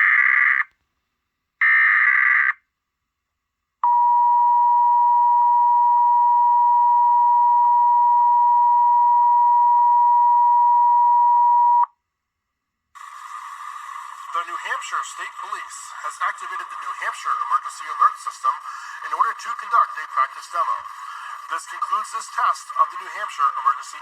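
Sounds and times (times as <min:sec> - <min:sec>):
digital data noise bursts: 0:13.0 - 0:24.0.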